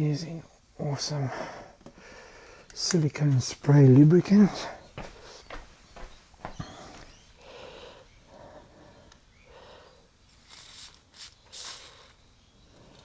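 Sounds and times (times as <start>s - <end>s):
soft breathing: 1.2s - 3.6s, 4.3s - 13.0s
aerosol spray hisses: 10.3s - 12.2s.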